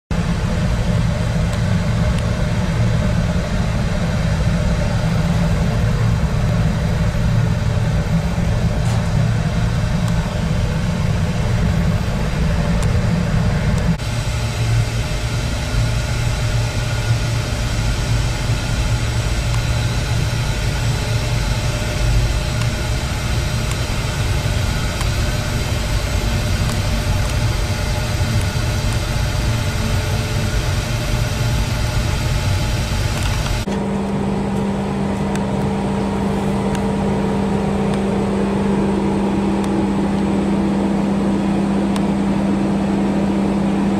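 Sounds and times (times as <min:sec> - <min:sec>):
machinery humming: 0:00.1 - 0:43.9.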